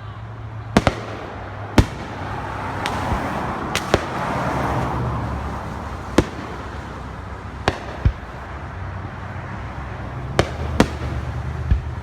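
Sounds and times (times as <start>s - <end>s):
firework shells bursting: 0.8s - 4.9s.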